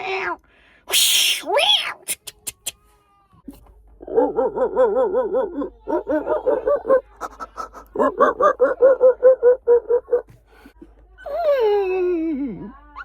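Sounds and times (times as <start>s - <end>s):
person making animal-like calls: 0.9s - 2.8s, 4.0s - 10.3s.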